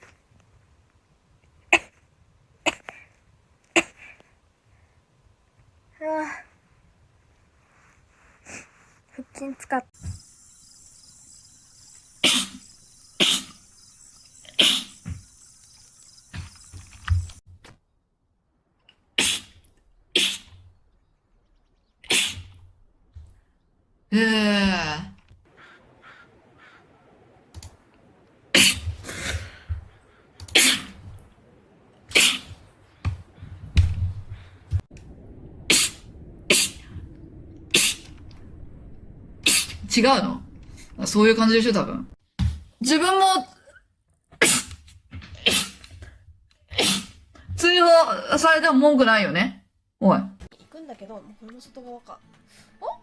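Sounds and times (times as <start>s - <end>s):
person sneezing: 19.2s - 19.6s, 22.1s - 22.5s, 28.5s - 29.5s, 30.5s - 31.0s, 32.1s - 32.6s, 44.4s - 44.8s, 45.4s - 45.9s, 46.7s - 47.2s.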